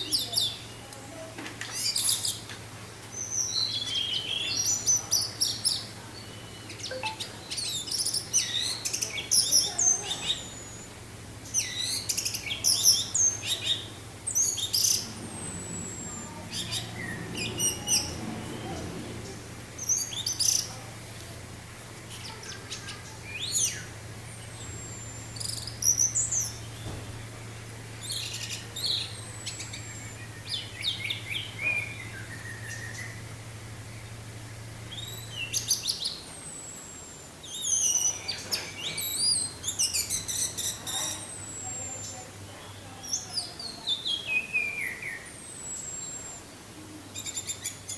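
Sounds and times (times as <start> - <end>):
faint low hum: 3.2 - 37.6
thrush singing: 5.3 - 36.0.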